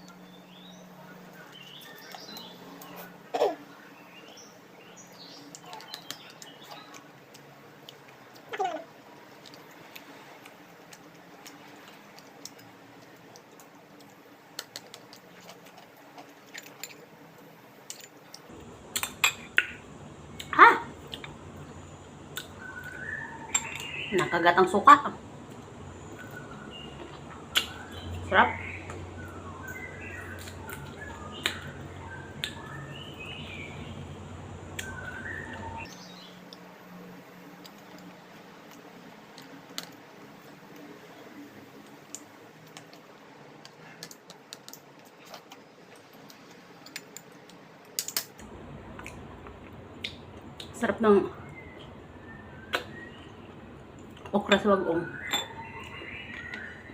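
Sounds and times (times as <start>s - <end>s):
small birds chirping: 0.0s - 10.2s, 17.9s - 43.2s, 48.5s - 56.9s
chewing: 9.4s - 19.7s
low hum: 18.5s - 35.9s, 48.4s - 56.9s.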